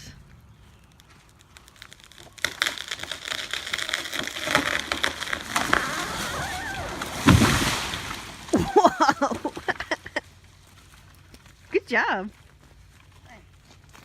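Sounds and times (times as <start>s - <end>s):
wood cracking and splintering: 0.8s - 11.7s
tree crown crashing through branches: 1.4s - 10.2s
heavy thud of tree hitting ground: 4.1s - 9.5s.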